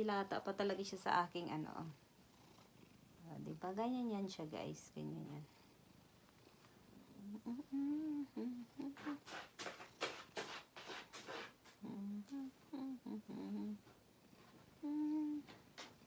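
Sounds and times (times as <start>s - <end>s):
woman humming: 7.1s - 9.3s, 11.8s - 14.0s, 14.8s - 15.6s.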